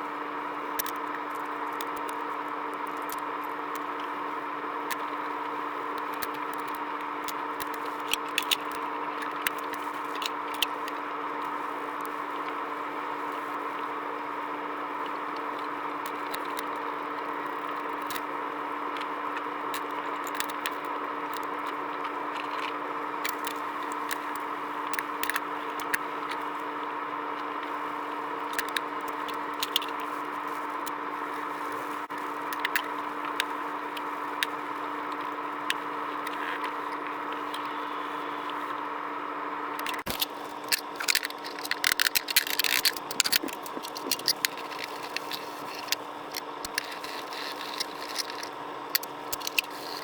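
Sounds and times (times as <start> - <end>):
light clicks and scrapes: 19.7 - 26.5, 39.8 - 50.0.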